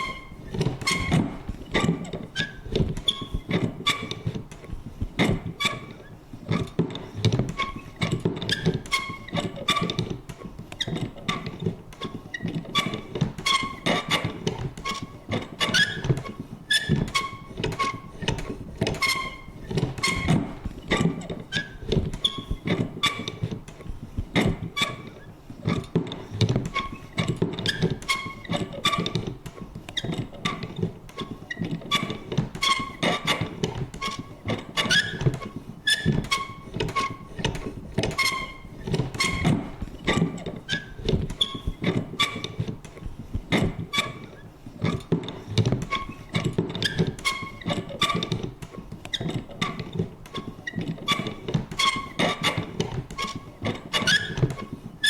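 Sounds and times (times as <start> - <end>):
paper punch clicking and creaking: 0.0 - 55.0.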